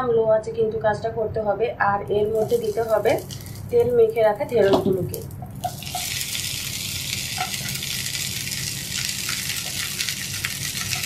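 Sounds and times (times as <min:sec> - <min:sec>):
okra sizzling in a frying pan: 0:02.2 - 0:11.0.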